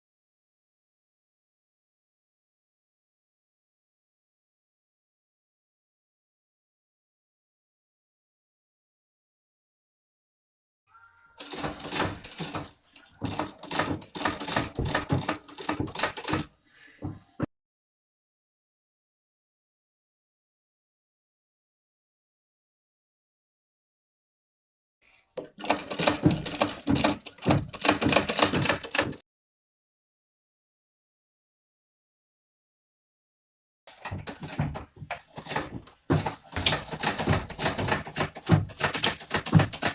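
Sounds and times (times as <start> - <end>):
sewing machine clattering: 11.4 - 16.5, 25.6 - 29.2, 33.9 - 39.9
sewing machine running: 11.4 - 16.5.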